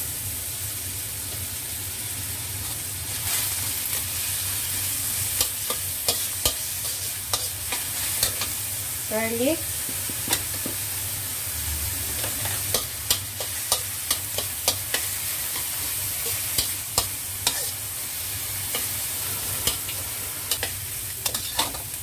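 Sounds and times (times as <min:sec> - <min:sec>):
onion and garlic sizzling in oil: 0:00.0 - 0:22.0
utensil scraping a pan: 0:12.1 - 0:17.8, 0:18.7 - 0:21.9.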